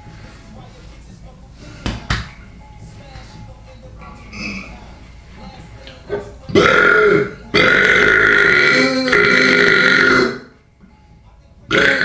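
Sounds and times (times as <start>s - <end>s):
loud belches: 6.5s - 10.5s, 11.7s - 12.0s.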